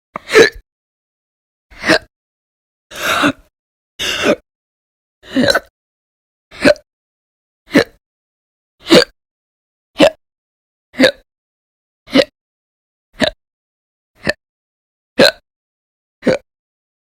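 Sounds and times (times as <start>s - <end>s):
person hiccuping: 5.3s - 5.7s, 6.6s - 6.8s, 7.7s - 8.0s, 8.8s - 9.2s, 10.0s - 10.2s, 11.0s - 11.3s, 12.1s - 12.4s, 13.2s - 13.4s, 14.2s - 14.4s, 15.2s - 15.4s, 16.2s - 16.4s.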